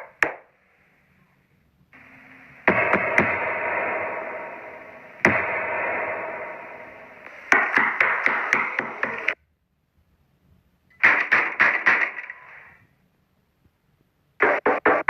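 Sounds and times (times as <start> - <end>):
echoing eerie tone: 2.0 - 9.4.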